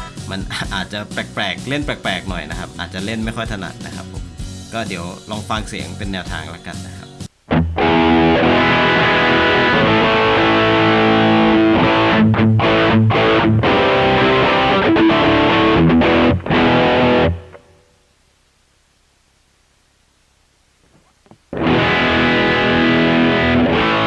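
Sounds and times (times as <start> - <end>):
electric guitar chords and notes: 0.0 - 17.9, 21.5 - 24.0
faint hiss: 17.6 - 21.6.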